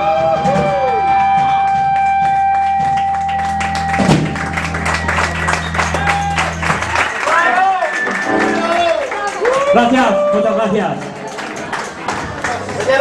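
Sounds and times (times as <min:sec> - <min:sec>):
rock band holding a chord: 0:01.4 - 0:09.2
audience clapping: 0:01.4 - 0:13.0
drum hit: 0:03.9 - 0:05.0.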